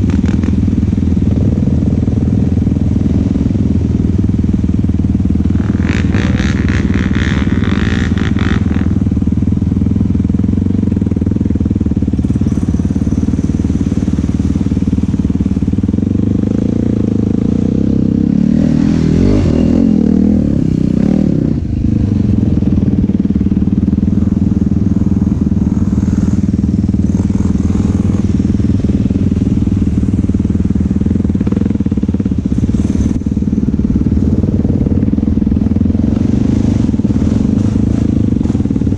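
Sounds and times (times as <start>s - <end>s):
atv engine running: 0.0s - 38.9s.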